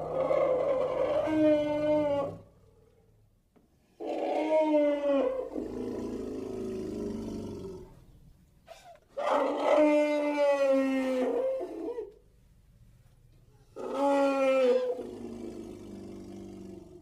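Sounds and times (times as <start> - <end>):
deep dinosaur calls: 0.0 - 2.6, 4.0 - 8.1, 13.8 - 17.0.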